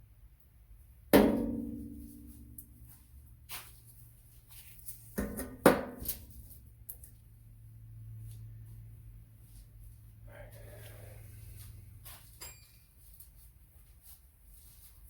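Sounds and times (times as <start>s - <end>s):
ringing metal clanks: 12.4s - 13.0s.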